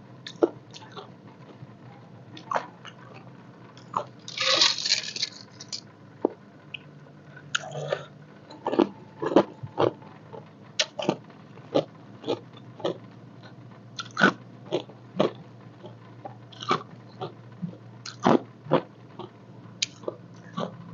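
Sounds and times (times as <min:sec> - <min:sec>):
faint low hum: 0:00.0 - 0:20.9
ice cubes crunching: 0:04.3 - 0:05.8.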